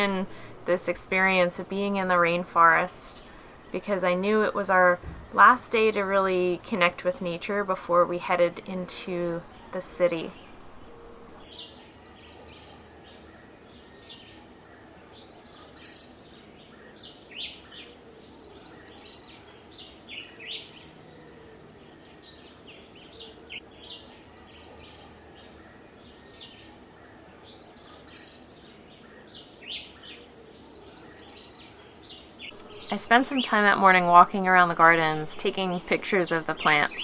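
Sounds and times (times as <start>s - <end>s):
forest background hum: 0.0s - 37.0s
songbirds chirping: 0.0s - 37.0s.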